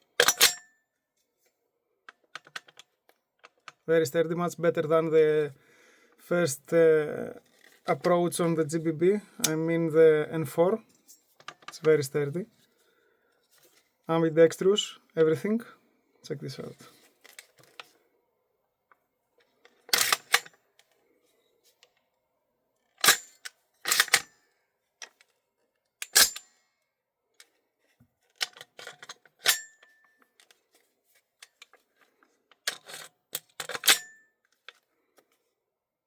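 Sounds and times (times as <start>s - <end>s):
metallic clicks of rifle controls: 0.2s - 0.7s, 2.1s - 3.8s, 19.5s - 20.9s, 23.0s - 24.3s, 26.0s - 26.6s, 28.3s - 30.8s, 31.4s - 34.8s.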